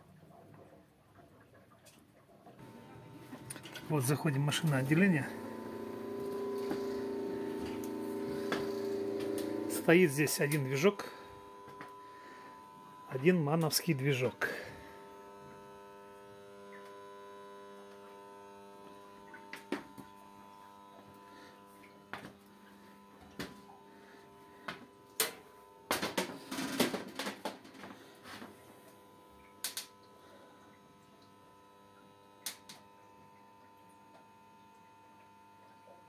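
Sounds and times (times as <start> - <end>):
steady electrical hum: 2.6 - 36.0.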